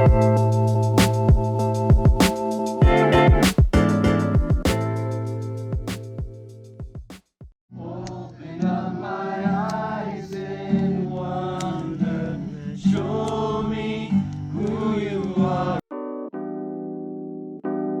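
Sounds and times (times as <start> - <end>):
steady low bass: 0.0 - 2.2
piano: 0.0 - 6.7, 14.4 - 18.0
choir-like vocals: 7.8 - 15.8.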